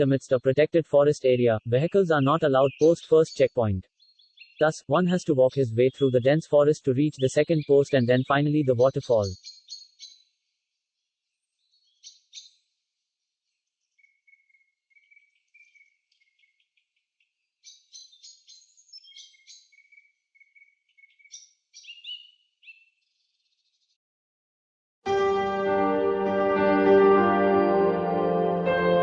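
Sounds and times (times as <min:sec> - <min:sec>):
faint birdsong: 0:01.3 - 0:24.0.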